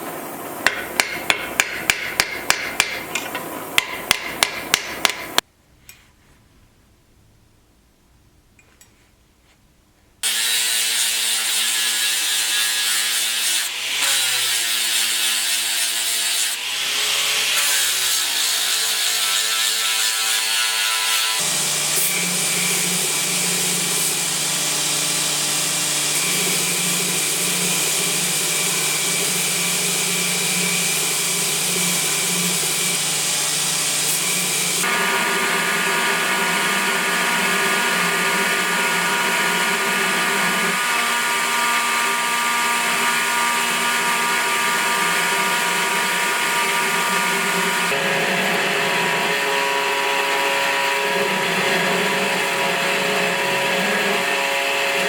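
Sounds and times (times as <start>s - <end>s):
power tool motor running: 21.4s - 55.0s.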